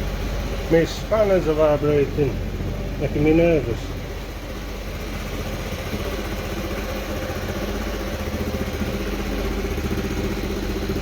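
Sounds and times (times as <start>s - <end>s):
scooter engine idling: 0.0s - 11.0s.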